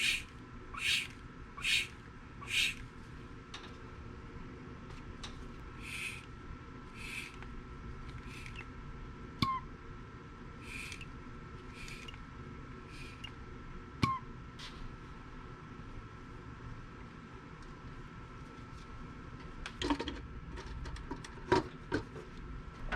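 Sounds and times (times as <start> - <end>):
short hissing puffs: 0.0 - 2.8, 5.8 - 6.3, 7.0 - 7.4, 8.2 - 8.6, 10.6 - 11.0, 11.7 - 12.2, 12.9 - 13.3
thin steady whine: 0.0 - 3.3, 5.5 - 16.6
sharp clicks: 8.2 - 8.7, 11.8 - 12.2.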